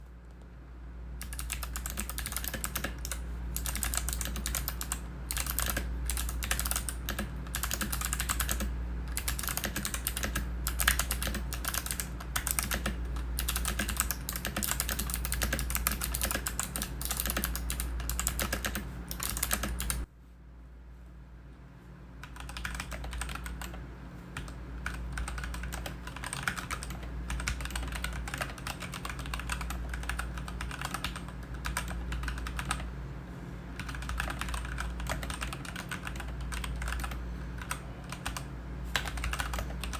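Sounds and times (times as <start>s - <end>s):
typing on a mechanical keyboard: 1.2s - 20.1s, 22.2s - 23.8s, 24.4s - 32.9s, 33.8s - 39.9s.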